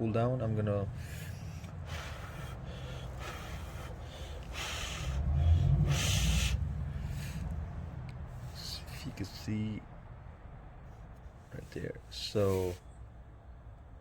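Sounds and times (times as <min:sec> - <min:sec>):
breath rumble on microphone: 0:00.8 - 0:09.1
person blowing short puffs: 0:00.9 - 0:07.8.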